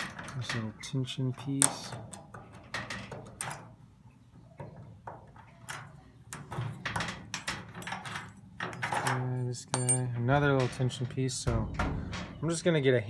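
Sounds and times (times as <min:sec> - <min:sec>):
metal door handle clicks and knocks: 0:05.1 - 0:12.6.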